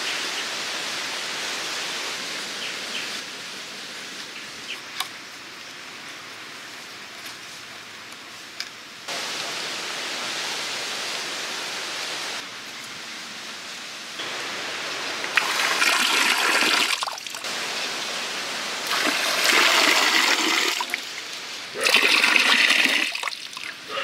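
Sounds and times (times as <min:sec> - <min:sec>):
rushing pouring water: 0:14.2 - 0:24.0.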